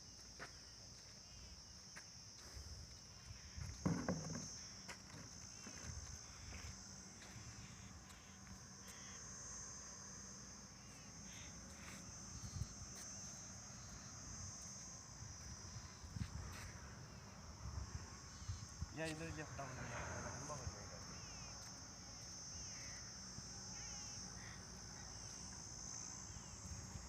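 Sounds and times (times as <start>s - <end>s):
insects chirring: 0.0s - 27.0s
faint knocks: 3.7s - 5.8s.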